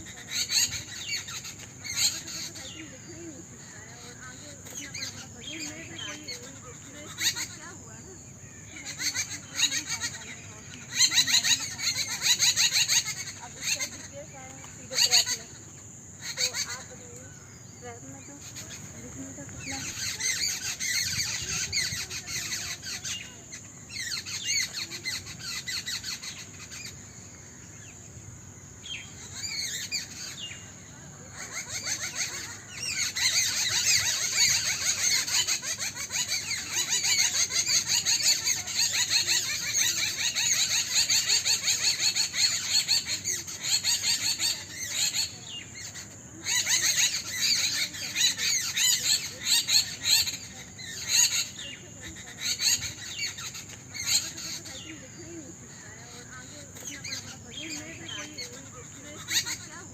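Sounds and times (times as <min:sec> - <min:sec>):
small birds chirping: 0:00.0 - 0:59.9.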